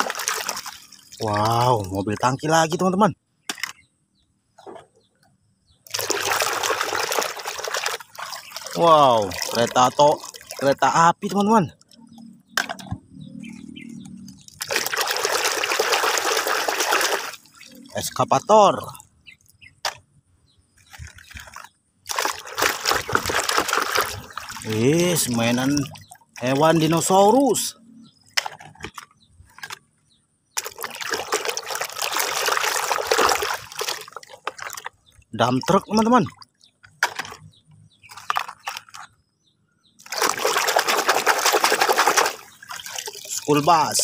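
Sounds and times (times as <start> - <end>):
water drips: 0.0 - 2.4, 5.9 - 12.3, 12.9 - 18.2, 20.8 - 27.7, 30.6 - 37.4, 40.0 - 44.0
water pouring and splashing: 0.0 - 2.4, 5.9 - 11.6, 13.6 - 18.2, 20.8 - 27.7, 30.6 - 37.5, 38.1 - 39.1, 40.0 - 44.0.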